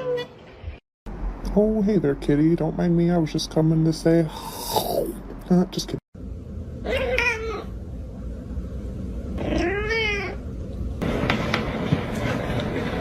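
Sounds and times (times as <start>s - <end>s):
cat meowing: 6.8s - 7.7s, 9.4s - 10.4s.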